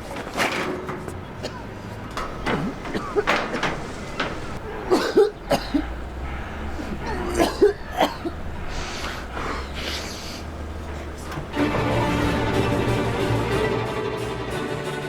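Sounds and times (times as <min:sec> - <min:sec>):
breathy rush of air: 0:01.4 - 0:13.9
person coughing or sneezing: 0:04.9 - 0:11.5
orchestral music: 0:11.4 - 0:15.0.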